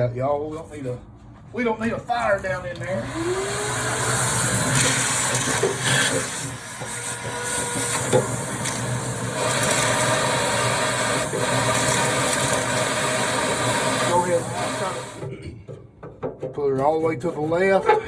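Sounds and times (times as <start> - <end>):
vacuum cleaner running: 2.8 - 15.3.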